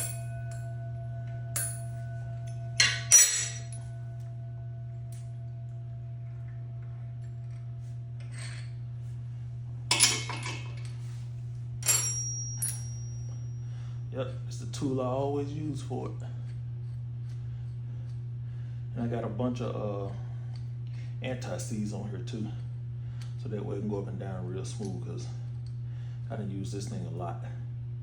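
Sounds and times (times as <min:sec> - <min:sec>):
steady low hum: 0:00.0 - 0:28.0
metal tool parts clanking: 0:02.8 - 0:03.8, 0:09.9 - 0:10.9.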